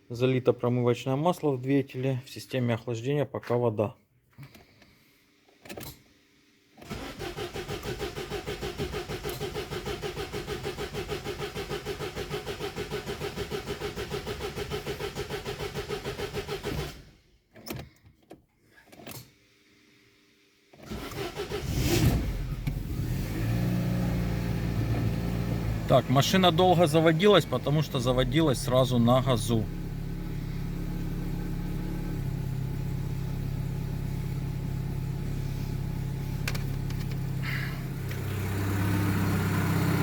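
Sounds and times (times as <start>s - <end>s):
car engine running: 22.6s - 40.0s.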